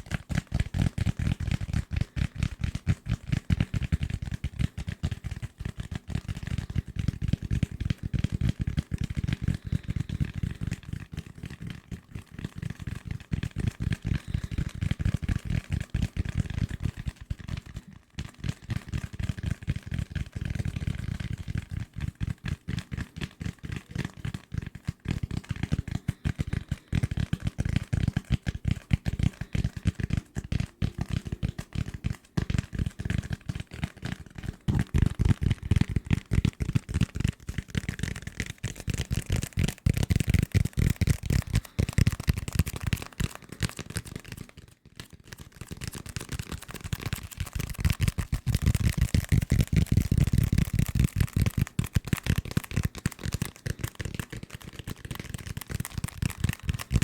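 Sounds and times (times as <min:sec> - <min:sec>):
fast tapping on desk objects: 0:18.5 - 0:57.0.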